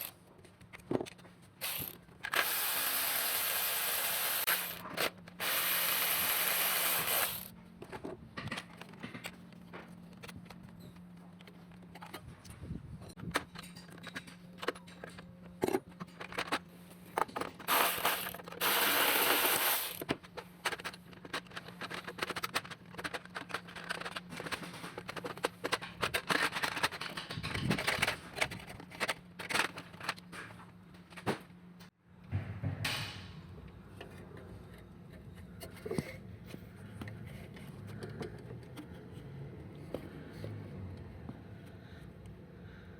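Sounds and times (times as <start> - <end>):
metal tools clinking and scraping: 13.3 - 16.6.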